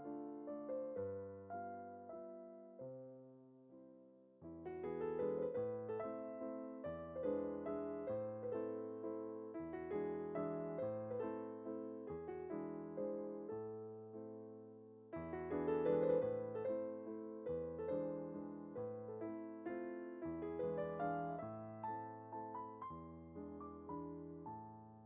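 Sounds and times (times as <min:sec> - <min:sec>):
piano music: 0:00.0 - 0:25.0.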